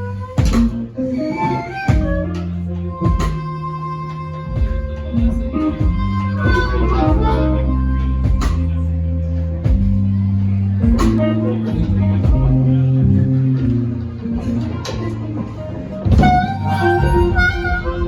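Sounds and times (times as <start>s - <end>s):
guitar runs: 0.0s - 18.0s
sustained bass notes: 0.0s - 18.0s
drum and cymbal hits: 0.4s - 0.8s, 1.9s - 2.4s, 3.0s - 3.6s, 4.6s - 7.5s, 8.2s - 8.8s, 9.7s - 10.1s, 10.8s - 11.3s, 12.2s - 12.7s.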